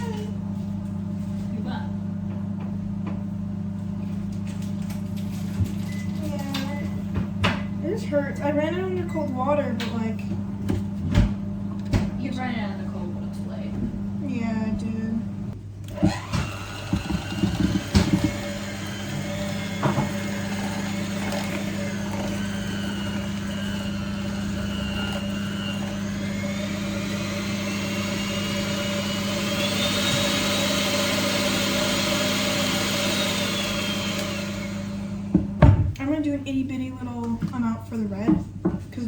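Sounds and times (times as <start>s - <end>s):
electric mixer motor whining: 15.9s - 35.7s.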